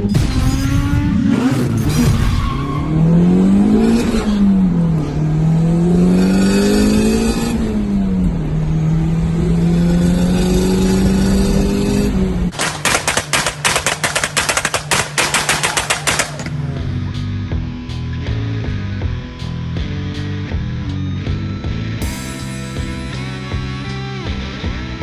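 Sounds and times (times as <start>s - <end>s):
car engine accelerating: 0.0s - 12.5s
rapid clattering clicks: 12.5s - 16.6s.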